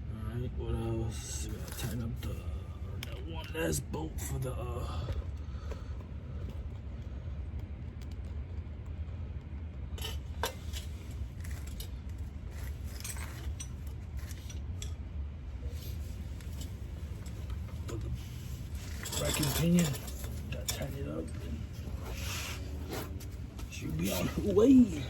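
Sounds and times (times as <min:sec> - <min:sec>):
steady low rumble: 0:00.0 - 0:25.0
hand tools clinking on metal: 0:10.0 - 0:15.0, 0:16.4 - 0:22.2.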